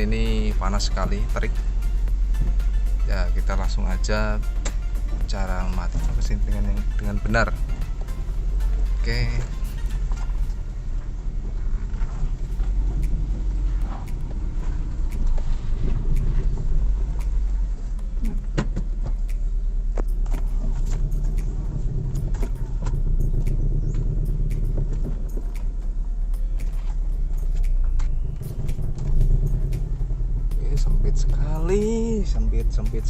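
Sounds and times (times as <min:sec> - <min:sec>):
car engine low rumble: 0:00.0 - 0:33.0
sharp clicks: 0:12.3 - 0:31.9.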